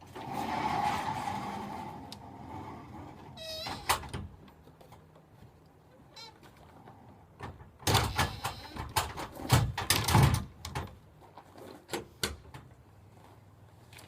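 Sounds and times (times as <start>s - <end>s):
door panels knocking and rattling: 7.4s - 11.0s.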